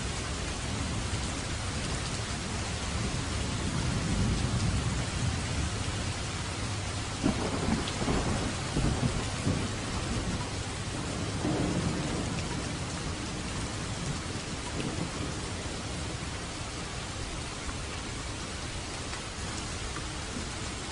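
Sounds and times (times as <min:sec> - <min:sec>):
rain hissing: 0:00.0 - 0:20.9
thunder rumbling: 0:06.7 - 0:16.4.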